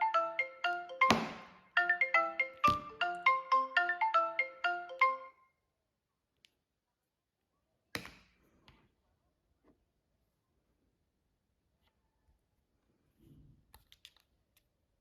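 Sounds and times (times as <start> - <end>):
phone ringtone melody: 0.0 - 5.4.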